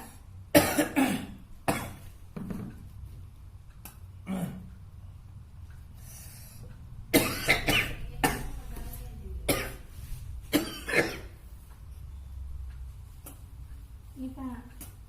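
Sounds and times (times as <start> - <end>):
man coughing forcefully: 0.6 - 2.0, 7.1 - 8.4, 9.5 - 9.8, 10.5 - 11.3.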